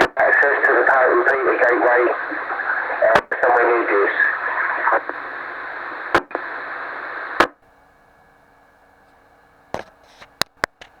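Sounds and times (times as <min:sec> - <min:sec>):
radio squelch clicks: 0:00.0 - 0:07.6
radio static hiss: 0:00.0 - 0:08.2
faint steady hum: 0:00.0 - 0:11.0.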